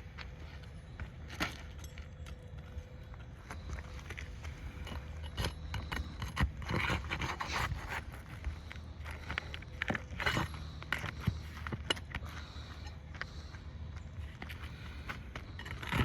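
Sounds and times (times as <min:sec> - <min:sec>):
steady low hum: 0:00.0 - 0:16.0
repair work scrapes and clicks: 0:03.5 - 0:16.0.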